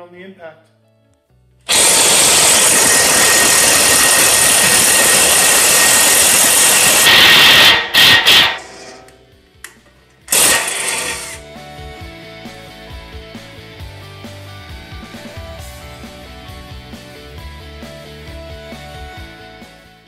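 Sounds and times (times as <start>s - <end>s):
impact driver running: 1.7s - 9.2s, 10.3s - 11.4s.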